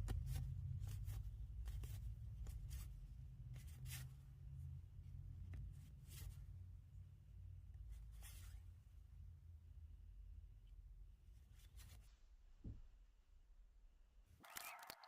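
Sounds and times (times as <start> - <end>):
trading cards rustling: 14.4 - 15.0.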